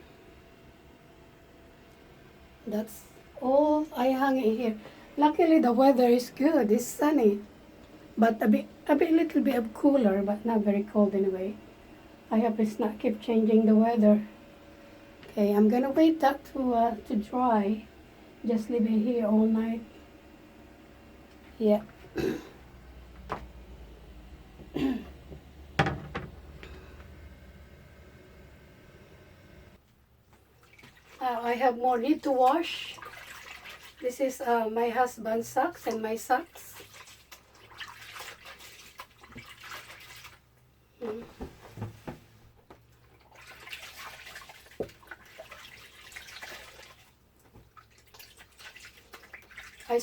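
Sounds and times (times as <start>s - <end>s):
faint steady hum: 0.0s - 50.0s
woman clearing throat and coughing: 22.1s - 22.6s, 24.7s - 25.2s
short knocks and squelches: 24.6s - 26.7s
water splashing and sloshing: 30.4s - 34.6s, 35.7s - 40.5s, 41.7s - 50.0s.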